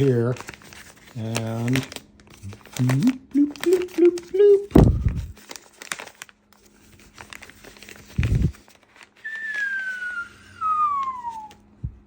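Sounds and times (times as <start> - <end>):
plastic packaging crinkling: 0.0 - 11.6
whistle-like tone sliding downward: 9.2 - 11.6.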